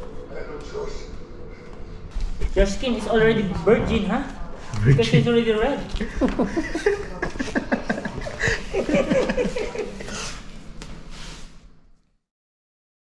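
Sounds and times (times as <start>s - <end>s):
people chuckling: 4.7s - 10.4s.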